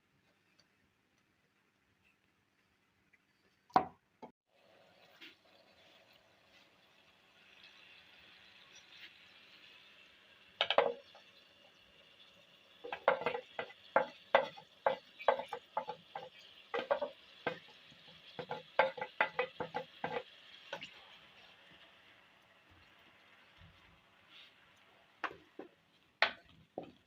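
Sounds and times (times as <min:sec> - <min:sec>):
faint steady sizzle: 0:04.5 - 0:27.0
spoon scraping and knocking pot: 0:10.6 - 0:11.2, 0:12.8 - 0:20.9.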